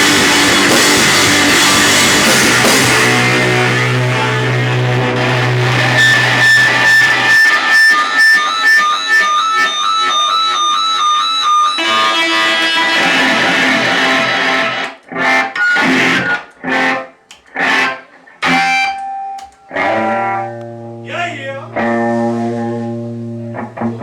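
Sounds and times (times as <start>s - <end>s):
plucked string instrument music: 11.8s - 21.1s, 21.7s - 24.0s.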